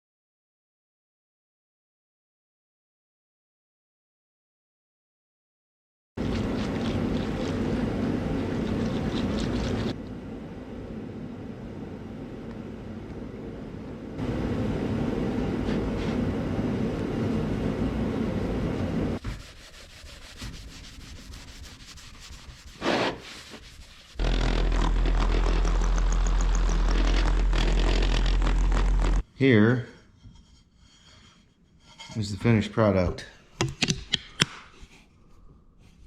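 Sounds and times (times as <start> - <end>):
steady low hum: 6.2 - 22.7, 23.3 - 32.7.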